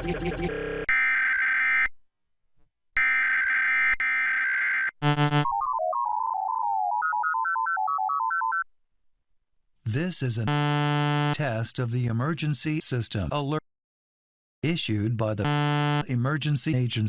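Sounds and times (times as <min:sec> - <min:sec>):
two-tone digital warbling: 0:00.0 - 0:00.9
electronic tone playing simple tune: 0:05.0 - 0:08.6.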